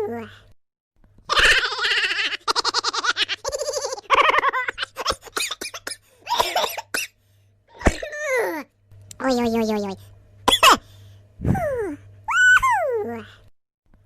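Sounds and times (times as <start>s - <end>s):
person laughing: 1.3s - 6.6s.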